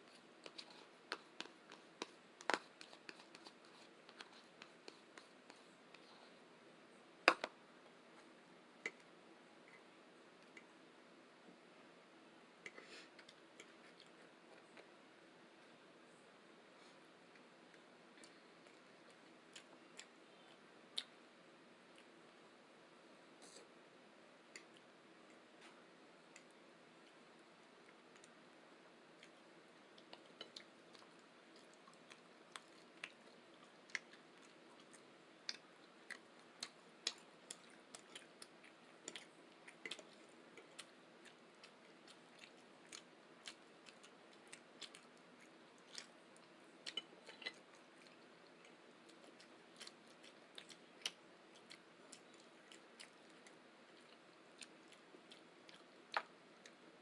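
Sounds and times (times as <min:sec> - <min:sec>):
chewing and mouth smacks: 0:17.3 - 0:21.2, 0:29.2 - 0:56.8.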